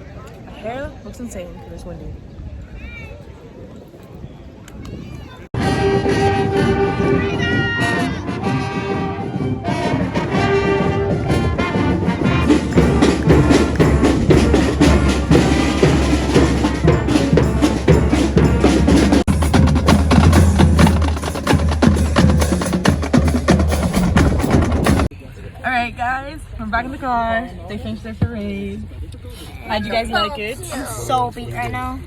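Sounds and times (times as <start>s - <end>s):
brass and reed instruments: 5.6s - 25.1s
drums beating: 5.6s - 25.1s.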